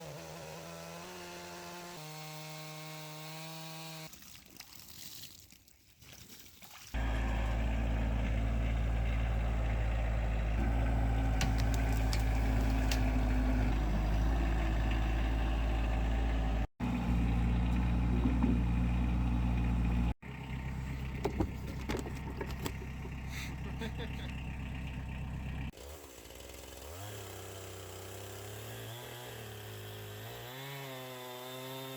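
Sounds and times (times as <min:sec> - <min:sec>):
chainsaw ripping a log: 0:00.0 - 0:04.1, 0:10.6 - 0:14.4, 0:25.8 - 0:31.9.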